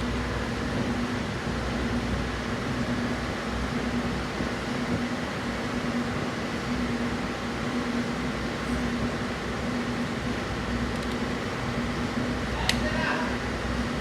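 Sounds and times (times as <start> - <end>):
electric fan whirring: 0.0 - 14.0.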